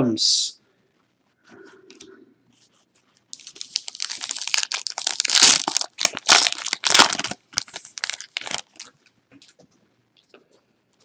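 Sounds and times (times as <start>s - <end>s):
plastic wrapper crinkling: 3.3s - 9.1s.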